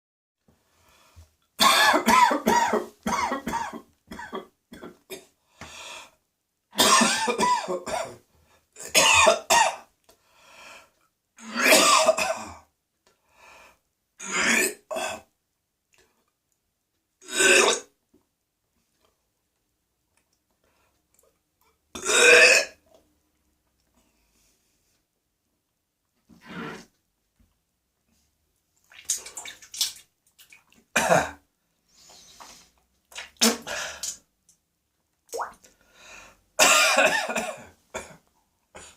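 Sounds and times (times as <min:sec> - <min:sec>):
harsh throat clearing: 0:01.6 - 0:05.0, 0:06.8 - 0:08.2, 0:31.0 - 0:31.4, 0:36.6 - 0:38.2
person coughing hard: 0:01.6 - 0:05.0, 0:06.8 - 0:08.1, 0:08.8 - 0:09.8, 0:11.5 - 0:12.6, 0:31.0 - 0:31.4, 0:36.6 - 0:38.2.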